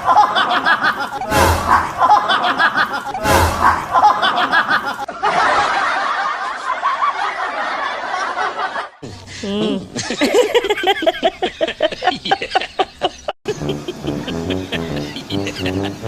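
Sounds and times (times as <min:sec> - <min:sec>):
person chuckling: 0:09.0 - 0:16.0
person snickering: 0:09.0 - 0:16.0.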